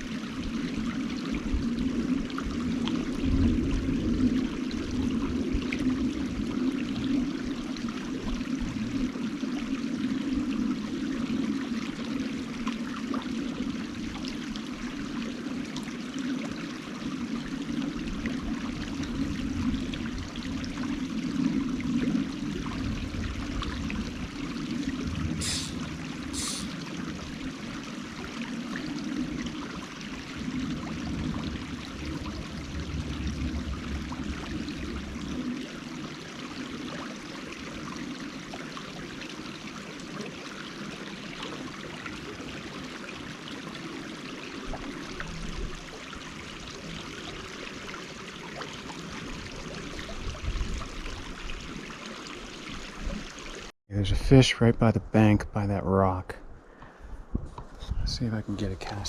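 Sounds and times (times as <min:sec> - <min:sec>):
creek running over rocks: 0:00.0 - 0:53.7, 0:57.6 - 0:59.0.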